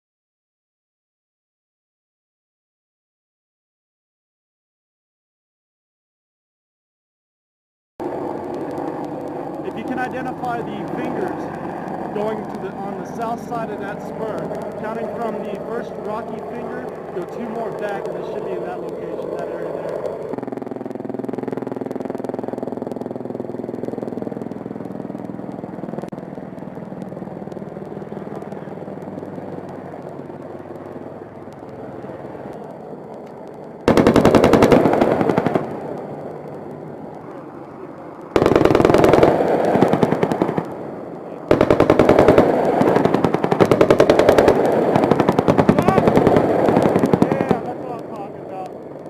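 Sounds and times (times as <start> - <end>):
helicopter hum: 8.0 - 49.0
automatic cannon fire: 33.8 - 36.0, 38.4 - 40.7, 41.5 - 47.8.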